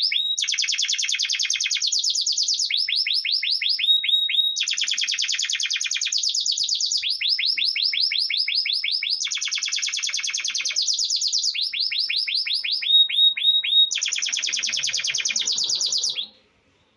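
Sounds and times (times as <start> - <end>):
canary singing rapid trills: 0.0 - 16.4.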